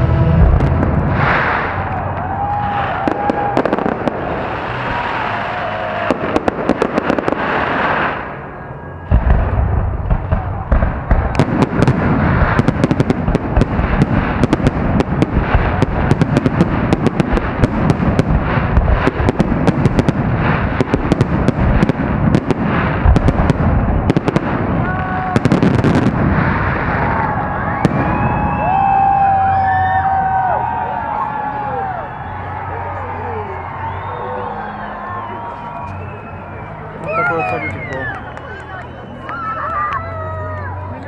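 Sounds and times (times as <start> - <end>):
fireworks booming and crackling: 0.0 - 31.4.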